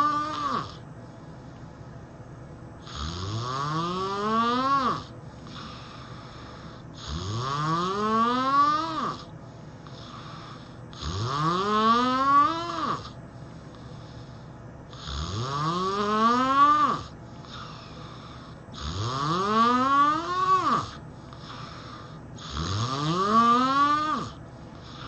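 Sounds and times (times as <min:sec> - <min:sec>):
person snoring heavily: 0:00.0 - 0:00.8, 0:02.8 - 0:13.2, 0:14.0 - 0:25.0
quiet breathing: 0:05.1 - 0:07.2, 0:09.1 - 0:11.0, 0:13.0 - 0:15.1, 0:17.1 - 0:18.8, 0:20.2 - 0:22.5, 0:24.3 - 0:25.0.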